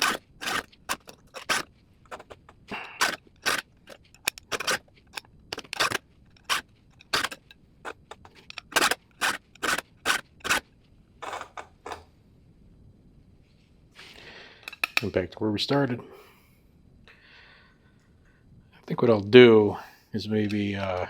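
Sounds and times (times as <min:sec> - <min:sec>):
file rasping on chainsaw chain: 0:00.0 - 0:10.6.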